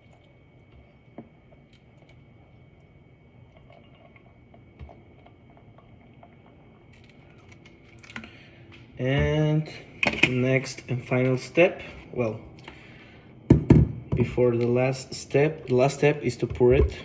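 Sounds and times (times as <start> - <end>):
faint high whine: 0.0 - 13.5.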